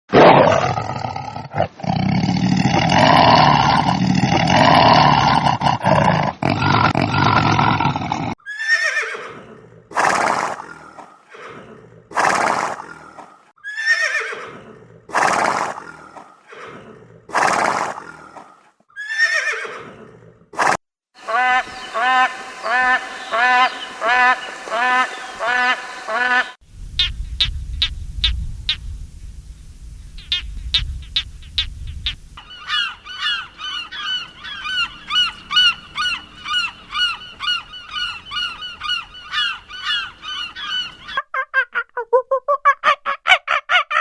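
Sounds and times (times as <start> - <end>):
short falling animal calls: 21.2 - 29.0
rough animal calling: 21.2 - 33.9.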